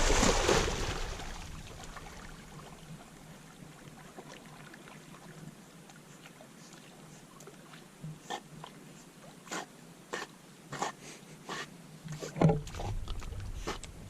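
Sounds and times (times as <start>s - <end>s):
dog splashing in water: 0.0s - 2.0s.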